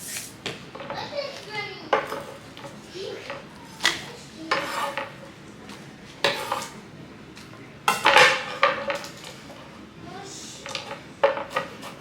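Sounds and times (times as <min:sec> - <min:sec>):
dishes and utensils clattering: 0:01.9 - 0:05.2, 0:07.9 - 0:09.6, 0:10.6 - 0:12.0.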